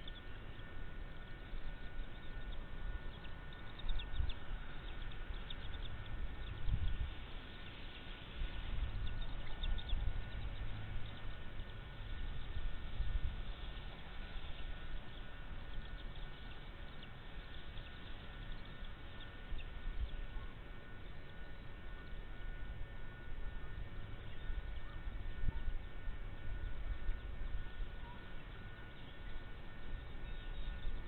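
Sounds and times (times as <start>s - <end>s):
faint steady whine: 0.0s - 31.0s
low wind rumble: 0.0s - 31.0s
faint high chirps: 13.3s - 31.0s.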